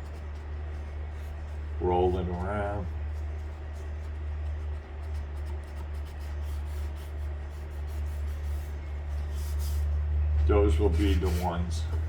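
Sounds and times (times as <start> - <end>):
sandpaper scratching on metal: 10.8 - 11.7.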